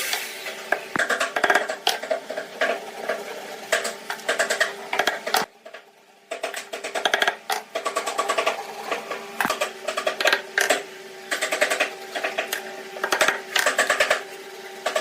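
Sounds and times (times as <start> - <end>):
small woodworking power tool: 6.4 - 15.0.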